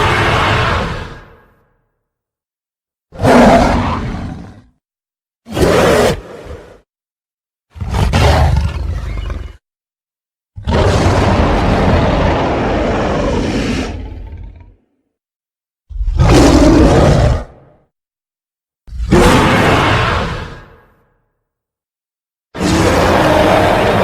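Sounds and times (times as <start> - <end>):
deep gorilla roars: 0.0 - 1.6, 3.2 - 4.7, 5.5 - 6.8, 7.8 - 9.6, 10.6 - 14.9, 15.9 - 17.8, 18.9 - 20.9, 22.6 - 24.0.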